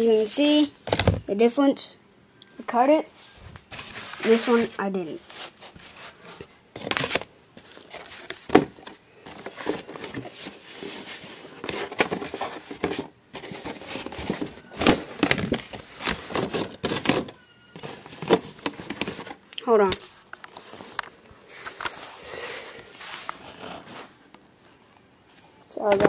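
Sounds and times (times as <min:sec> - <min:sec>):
cardboard boxes being handled: 0:03.6 - 0:19.4.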